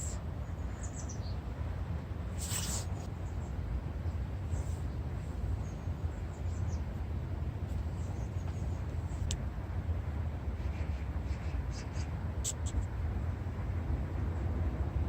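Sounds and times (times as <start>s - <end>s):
steady low rumbling: 0.0s - 15.0s.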